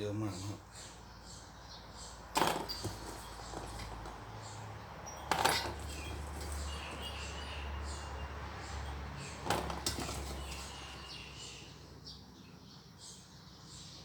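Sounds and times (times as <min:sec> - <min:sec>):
handling noises: 0:02.2 - 0:11.6.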